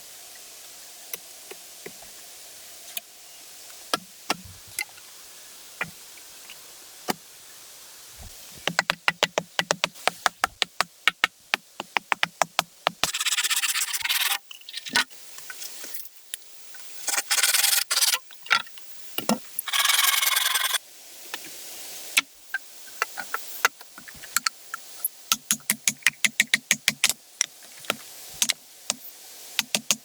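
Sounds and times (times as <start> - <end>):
scraping strokes on wood: 13.0 - 15.0.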